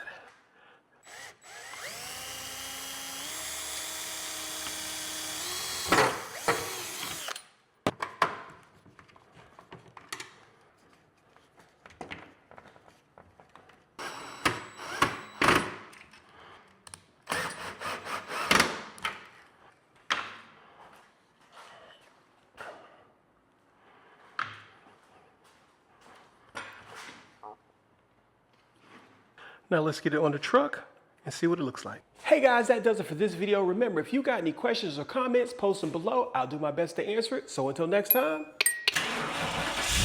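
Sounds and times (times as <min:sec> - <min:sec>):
power tool motor whirring: 0:01.0 - 0:07.5, 0:14.0 - 0:15.6, 0:39.4 - 0:40.0.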